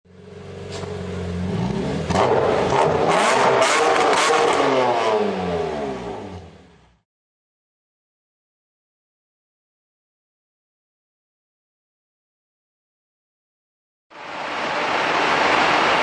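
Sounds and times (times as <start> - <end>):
car engine revving: 0.2 - 7.0.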